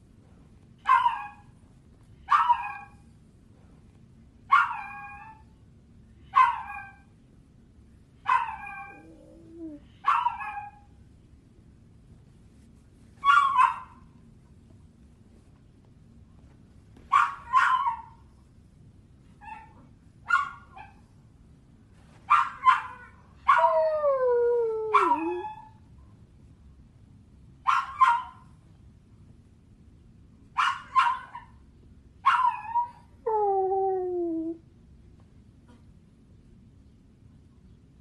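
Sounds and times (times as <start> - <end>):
dog yelping: 0.9 - 1.4, 2.3 - 2.9, 4.5 - 5.4, 8.3 - 10.8, 24.9 - 25.7, 32.2 - 34.6
dog whining: 8.4 - 10.7, 22.8 - 25.7, 32.4 - 34.6.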